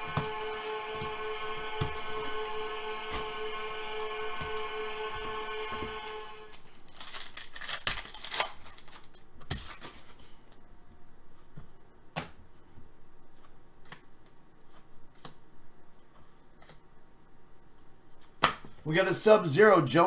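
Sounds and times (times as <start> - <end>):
steady pitched tone: 0.0 - 6.6
wrapper ripping open: 6.9 - 10.2.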